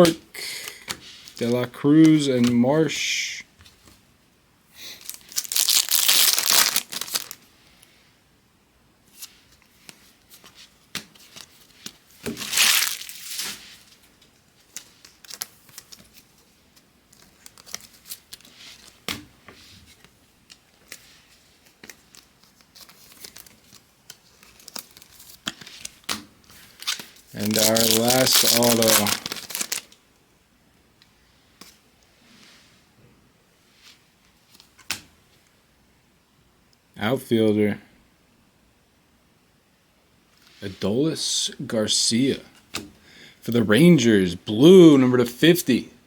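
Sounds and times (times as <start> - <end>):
wrapper tearing open: 5.0 - 7.4, 12.3 - 13.6, 14.7 - 16.1, 17.2 - 18.9, 21.9 - 26.1, 26.7 - 30.0.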